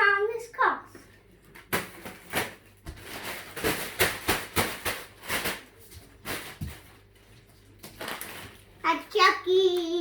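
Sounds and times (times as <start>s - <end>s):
packaging rustling and knocking: 1.5s - 8.7s.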